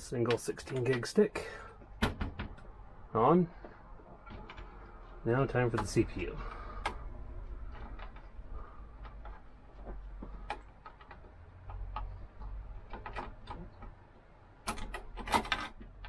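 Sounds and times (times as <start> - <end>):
clicks and taps of hardware installation: 0.2 - 1.1, 5.6 - 6.1, 9.0 - 16.0.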